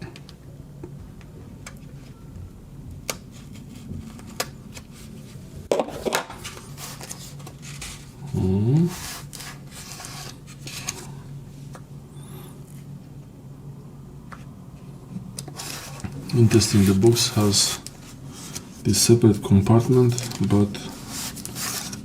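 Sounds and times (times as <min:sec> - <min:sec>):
cardboard rustling: 0:15.5 - 0:18.9, 0:19.7 - 0:22.0.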